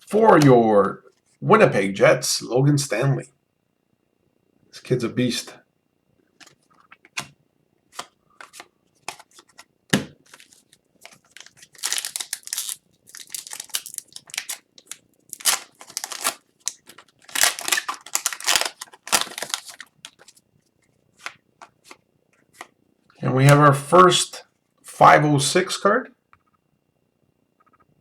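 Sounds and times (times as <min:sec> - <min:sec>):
cards rustling and sliding: 0:06.4 - 0:20.4, 0:21.2 - 0:22.7.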